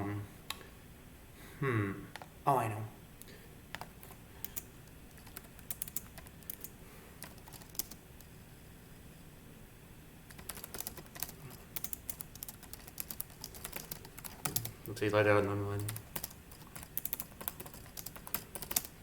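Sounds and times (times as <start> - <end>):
keyboard keys clicking: 3.7 - 8.0, 10.3 - 14.7, 15.8 - 19.0.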